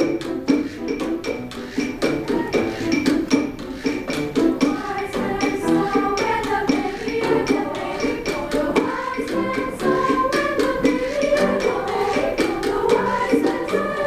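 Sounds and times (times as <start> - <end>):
rhythmic percussion: 0.0 - 14.0
women's choir singing: 2.1 - 3.5, 4.4 - 14.0.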